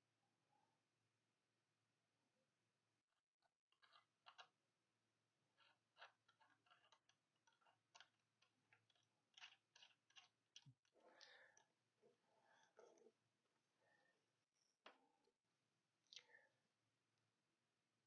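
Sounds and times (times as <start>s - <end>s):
small watch parts clicking: 3.7s - 4.5s, 5.6s - 11.7s.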